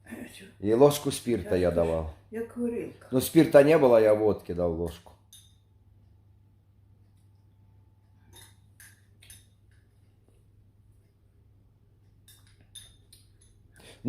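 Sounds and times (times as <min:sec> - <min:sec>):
faint room hum: 0:00.0 - 0:14.0
soft clinks of tableware: 0:05.2 - 0:05.8, 0:08.2 - 0:09.9, 0:12.2 - 0:13.7.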